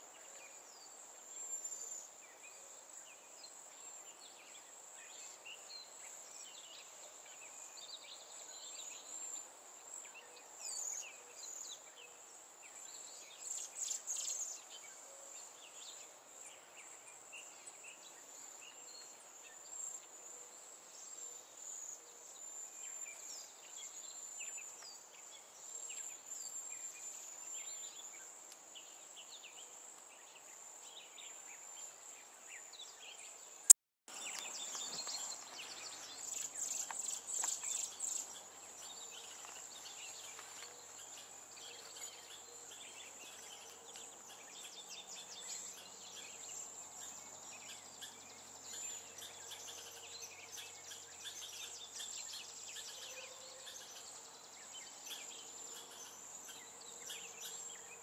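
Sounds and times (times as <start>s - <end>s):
insect trill: 0.1s - 58.0s
small birds chirping: 21.0s - 58.0s.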